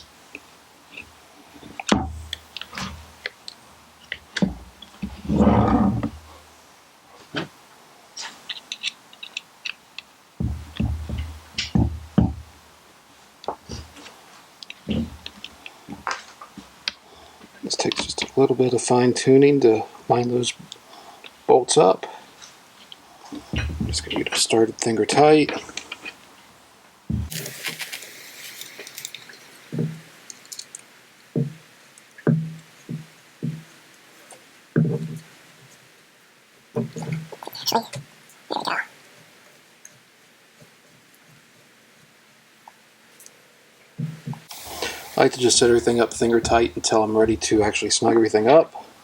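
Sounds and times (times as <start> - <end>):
small clicks and rustle: 0.0 - 5.2, 8.2 - 10.2, 13.4 - 18.4, 25.5 - 26.4, 27.3 - 32.9, 39.3 - 43.4
dull knocks: 10.4 - 12.5, 27.1 - 27.3.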